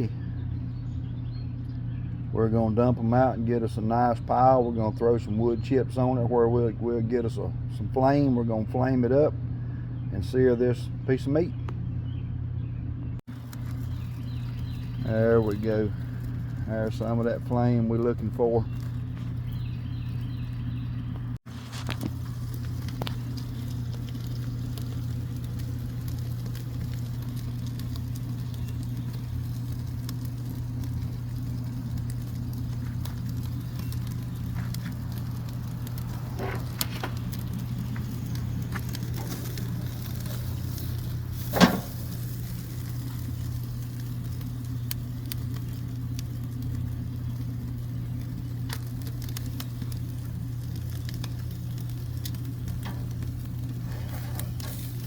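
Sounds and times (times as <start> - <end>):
steady low hum: 0.0 - 55.0
fire crackling: 13.1 - 55.0
sharp fire pop: 41.4 - 42.2.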